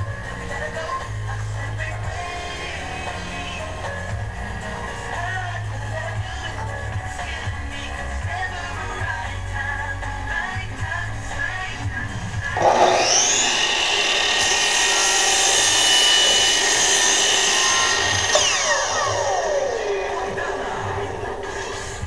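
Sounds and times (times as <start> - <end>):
miter saw cutting: 12.5 - 22.0.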